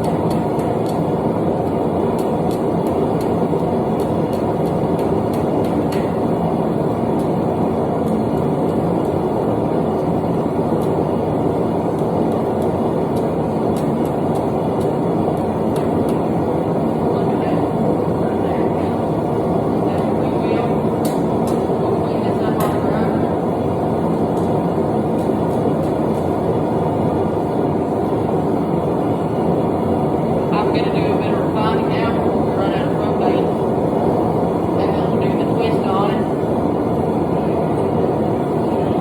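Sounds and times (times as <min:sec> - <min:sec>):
forge burner rushing: 0:00.0 - 0:39.0.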